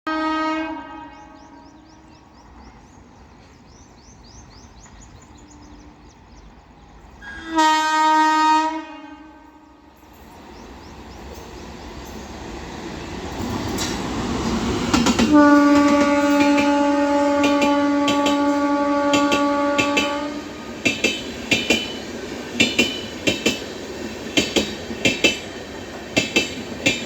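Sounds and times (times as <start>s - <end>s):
locomotive horn blast: 0.1s - 2.0s, 7.2s - 10.0s, 15.2s - 20.8s
train rumble: 9.4s - 27.0s.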